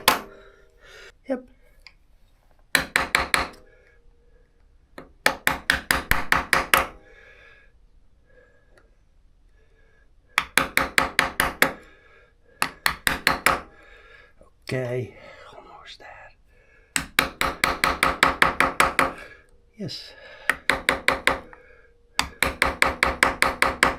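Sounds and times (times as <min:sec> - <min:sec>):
hammer striking metal: 0:00.0 - 0:00.6, 0:02.7 - 0:03.6, 0:05.0 - 0:07.0, 0:10.4 - 0:11.8, 0:12.6 - 0:13.7, 0:17.0 - 0:19.4, 0:20.5 - 0:21.6, 0:22.2 - 0:23.9.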